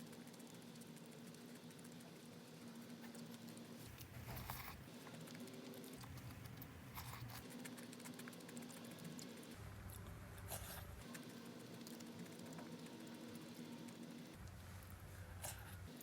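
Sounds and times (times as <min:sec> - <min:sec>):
eating and handling food: 0:00.0 - 0:16.0
crinkly crunchy bursts: 0:00.1 - 0:09.6.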